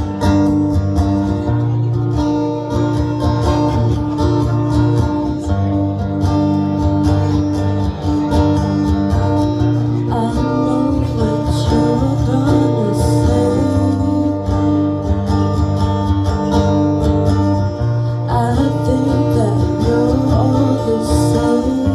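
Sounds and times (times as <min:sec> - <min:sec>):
acoustic guitar strummed chords: 0:00.0 - 0:21.9.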